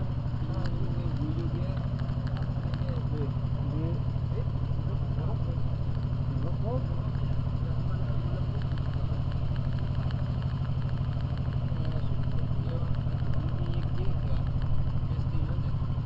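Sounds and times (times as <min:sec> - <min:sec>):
vehicle engine running steadily: 0:00.0 - 0:16.0.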